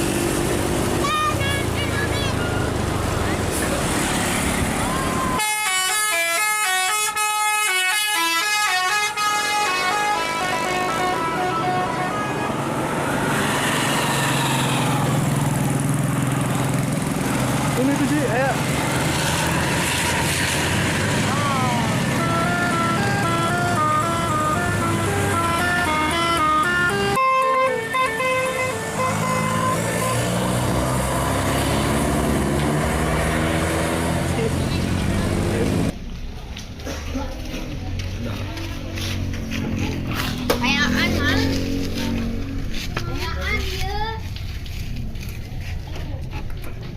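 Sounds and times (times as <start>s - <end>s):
bus engine and road noise: 0.0s - 46.9s
multi-tone musical horn melody: 5.4s - 12.8s, 21.7s - 30.6s.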